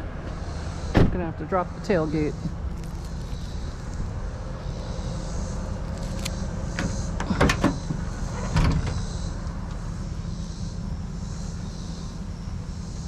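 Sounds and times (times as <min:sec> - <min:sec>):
steady low rumble: 0:00.0 - 0:13.0
tailgate metal clanks: 0:06.7 - 0:09.1.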